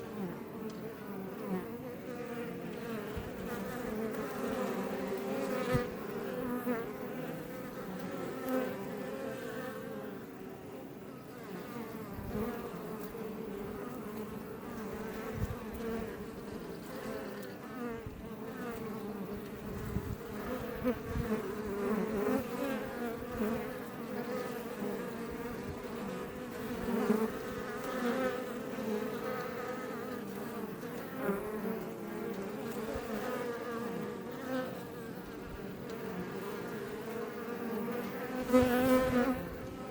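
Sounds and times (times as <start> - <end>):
honey bees buzzing: 0.0 - 39.9.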